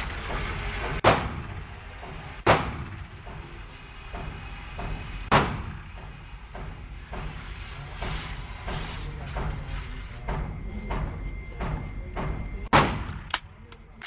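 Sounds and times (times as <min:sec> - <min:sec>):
rifle shots echoing: 0:12.7 - 0:13.5.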